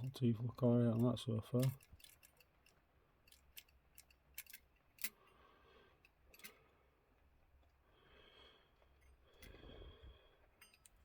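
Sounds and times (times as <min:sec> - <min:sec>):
small metal clicks: 0:00.8 - 0:05.4, 0:06.0 - 0:06.7, 0:10.4 - 0:11.0.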